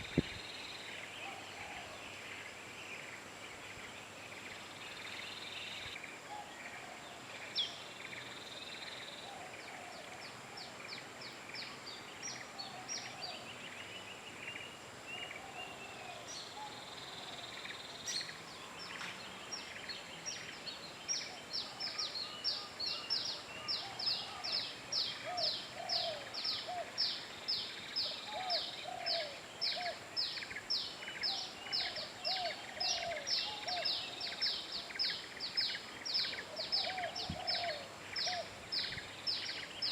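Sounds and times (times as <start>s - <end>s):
steady background hiss: 0.0s - 39.9s.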